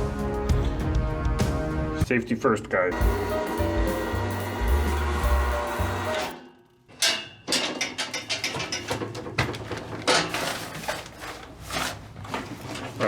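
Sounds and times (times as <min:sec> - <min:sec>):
background music: 0:00.0 - 0:02.3, 0:02.9 - 0:06.4.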